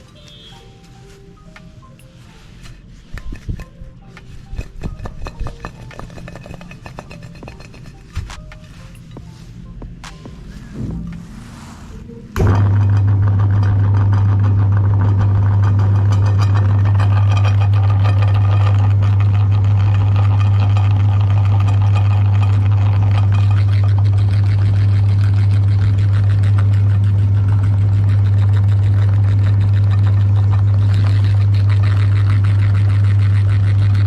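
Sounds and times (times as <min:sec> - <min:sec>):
meat grinder motor humming: 0:12.4 - 0:34.0.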